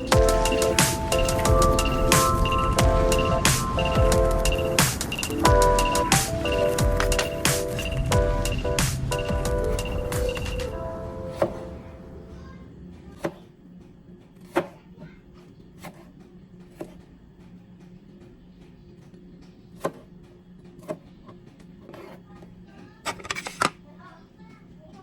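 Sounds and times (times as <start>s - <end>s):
background music: 0.0s - 12.4s.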